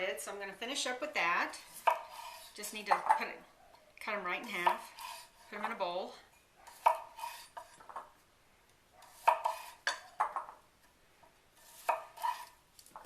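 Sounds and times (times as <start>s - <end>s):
knife and bowl clinking: 11.9s - 12.5s.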